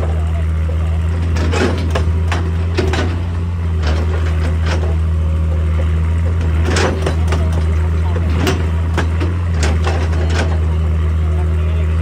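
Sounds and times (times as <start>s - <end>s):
excavator diesel engine running: 0.0s - 12.0s
short metal clanks: 1.2s - 5.1s, 5.8s - 10.8s.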